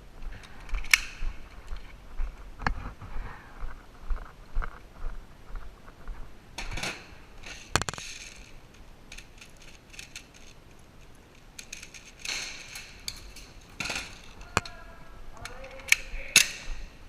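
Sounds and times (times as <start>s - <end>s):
gear rustling and clicking: 5.6s - 16.9s.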